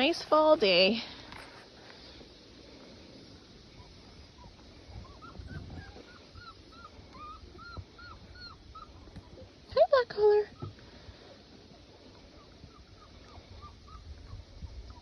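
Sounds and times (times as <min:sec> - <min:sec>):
puppies whimpering: 0:03.6 - 0:09.7, 0:11.5 - 0:15.0.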